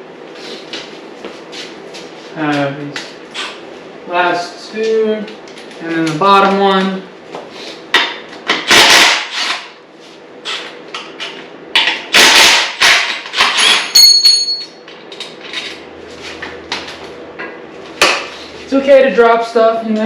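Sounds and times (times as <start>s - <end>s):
metal tools and bolts clanking: 13.3s - 14.8s
metal part clinking on floor: 13.6s - 14.8s.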